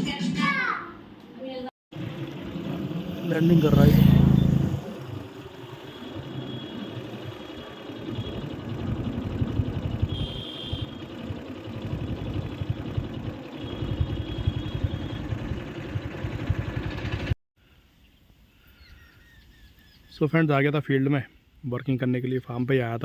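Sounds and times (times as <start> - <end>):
vehicle engine rumbling: 1.9 - 17.4.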